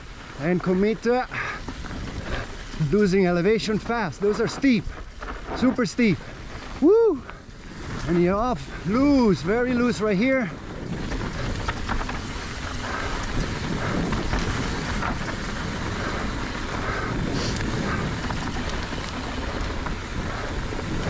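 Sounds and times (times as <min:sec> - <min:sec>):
bike tyres skidding on dirt: 0:00.0 - 0:21.0
wind rushing over microphone: 0:00.0 - 0:21.0
small knocks from bike: 0:10.8 - 0:16.8, 0:17.4 - 0:20.8.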